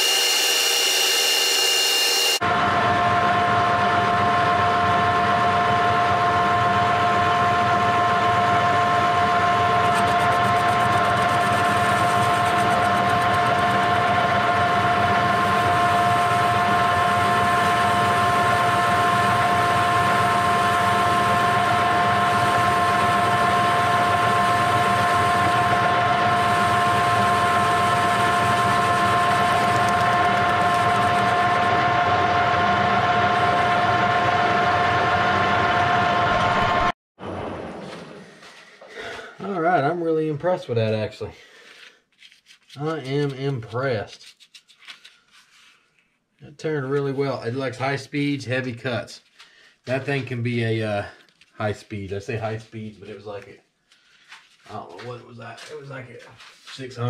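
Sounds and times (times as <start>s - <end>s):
metal lathe whining: 0.0s - 36.9s.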